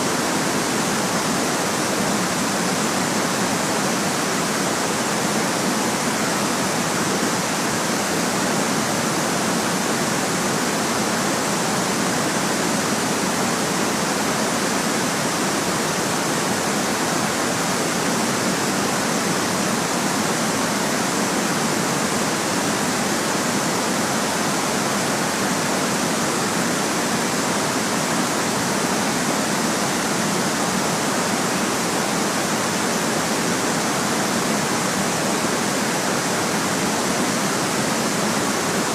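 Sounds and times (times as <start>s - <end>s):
steady white noise hiss: 0.0s - 38.9s.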